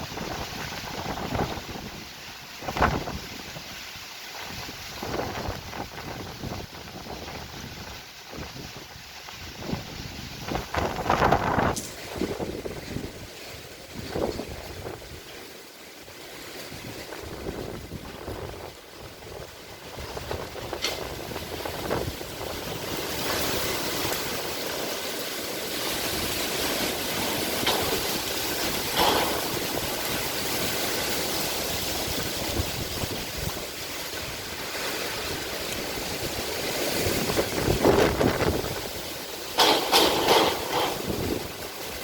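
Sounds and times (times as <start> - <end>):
rain: 0.0 - 42.0
wind: 0.0 - 42.0
sharp knocks and rattles: 27.4 - 30.2, 39.6 - 41.4.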